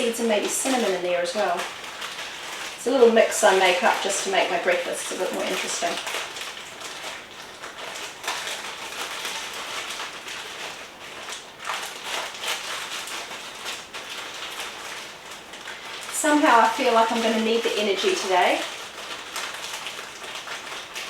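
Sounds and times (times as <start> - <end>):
rain falling: 0.0 - 21.0.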